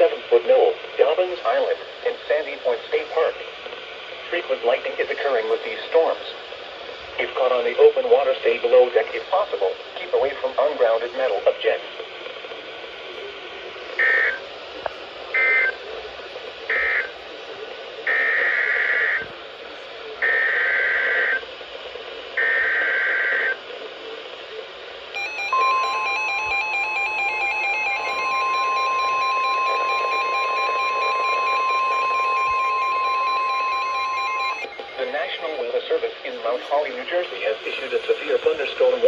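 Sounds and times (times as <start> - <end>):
radio receiver hiss: 0.0 - 39.0
warbling data bursts: 14.0 - 14.4, 25.2 - 39.0
steady warning alarm tone: 14.0 - 14.5, 15.3 - 15.8, 16.7 - 17.2, 18.0 - 19.3, 20.2 - 21.5, 22.4 - 23.6, 25.1 - 36.6.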